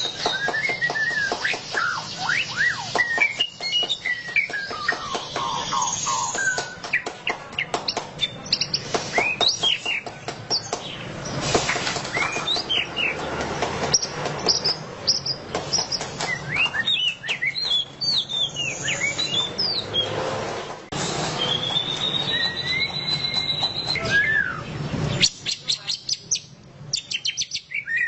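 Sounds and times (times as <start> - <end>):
bird singing whistled notes: 0.0 - 7.0, 12.1 - 13.2, 13.9 - 20.2, 21.4 - 28.0.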